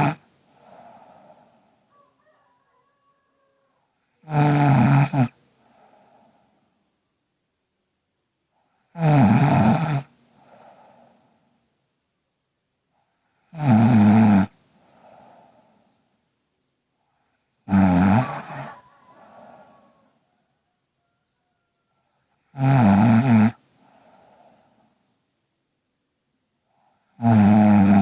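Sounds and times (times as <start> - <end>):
girl snoring loudly: 0.0 - 1.5, 4.0 - 5.4, 8.9 - 11.0, 13.5 - 15.6, 17.6 - 20.0, 22.4 - 23.6, 27.1 - 28.0.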